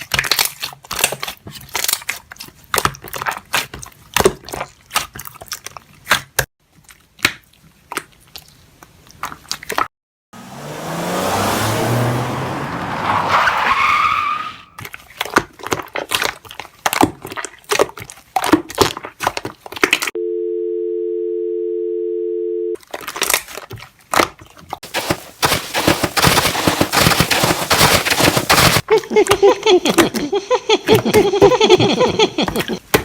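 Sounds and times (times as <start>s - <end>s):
telephone dial tone: 20.2s - 22.8s.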